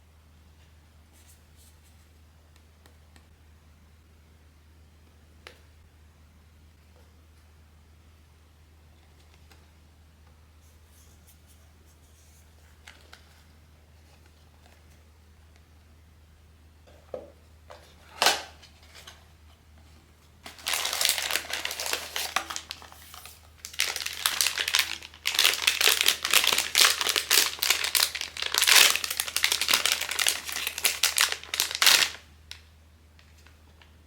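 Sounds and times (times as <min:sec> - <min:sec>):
plastic packaging crinkling: 0:20.4 - 0:33.9.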